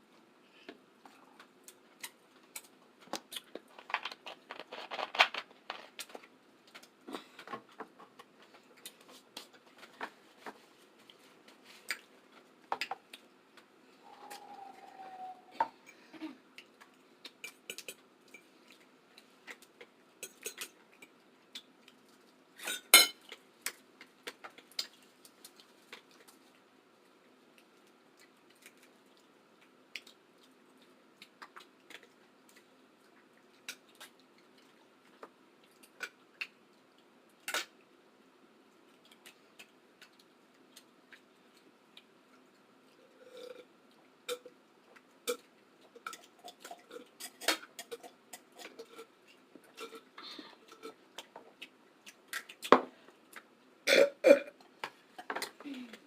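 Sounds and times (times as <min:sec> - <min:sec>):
utensils clinking on dishes: 0:20.2 - 0:20.8, 0:22.6 - 0:23.3.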